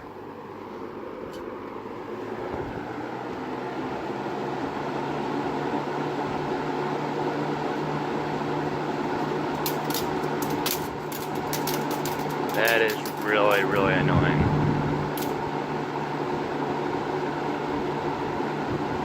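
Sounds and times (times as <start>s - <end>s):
box fan humming: 0.0s - 19.0s
blades striking loose part: 9.6s - 13.8s.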